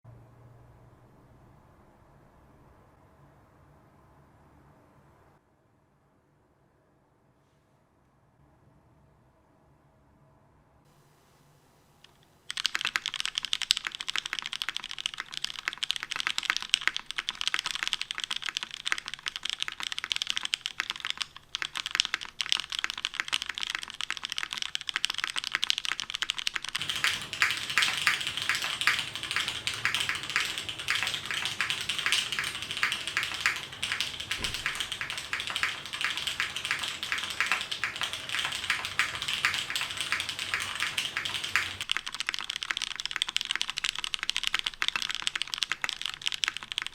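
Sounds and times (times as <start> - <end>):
typing on mechanical keyboard: 12.1 - 46.9.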